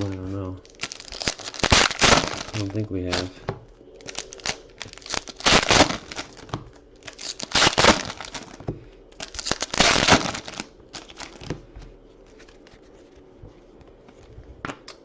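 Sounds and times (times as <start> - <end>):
foil wrappers tearing and crinkling: 0.0 - 11.6.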